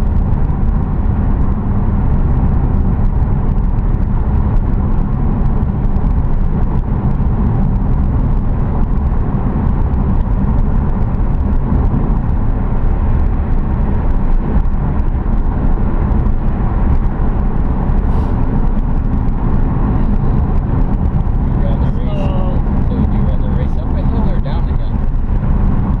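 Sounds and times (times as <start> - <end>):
car engine and road noise: 0.0 - 26.0.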